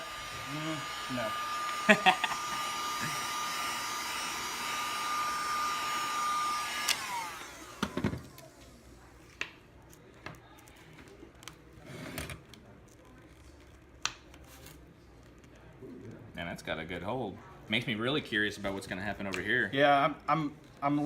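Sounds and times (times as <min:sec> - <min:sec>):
fan winding down: 0:00.0 - 0:08.0
heat gun blowing with a whine: 0:00.0 - 0:08.5.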